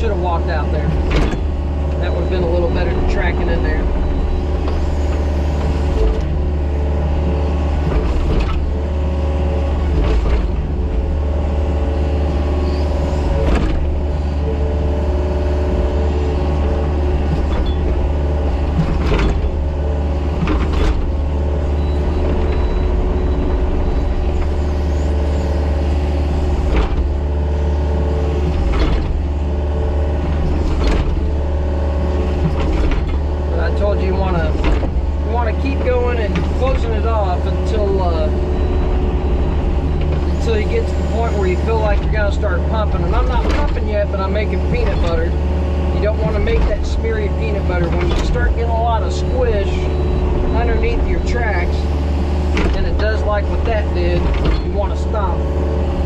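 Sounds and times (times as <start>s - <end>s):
excavator diesel engine running: 0.0s - 56.0s.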